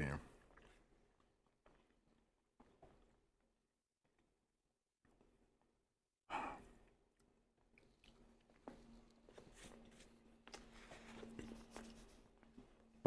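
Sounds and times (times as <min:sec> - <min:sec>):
breathy sigh: 0:06.3 - 0:06.7
faint clicks and mouth noises: 0:06.7 - 0:09.4.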